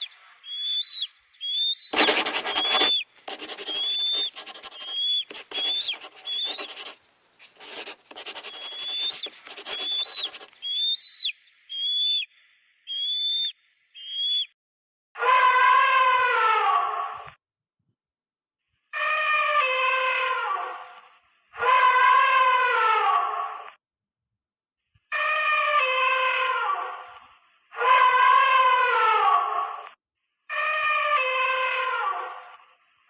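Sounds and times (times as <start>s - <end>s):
high whistled animal squeaks: 0.0s - 7.0s, 7.6s - 12.2s
harsh raspy screeches: 1.9s - 7.0s, 7.6s - 10.5s.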